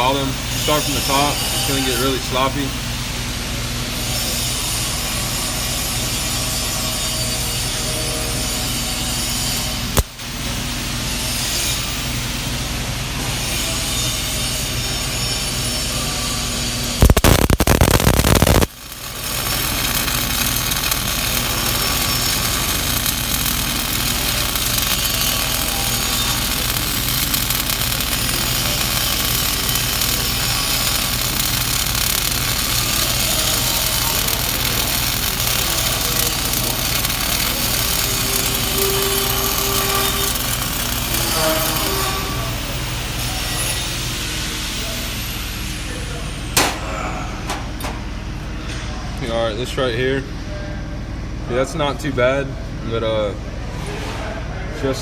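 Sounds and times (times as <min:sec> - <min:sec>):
welding arc crackling: 0:16.5 - 0:44.3.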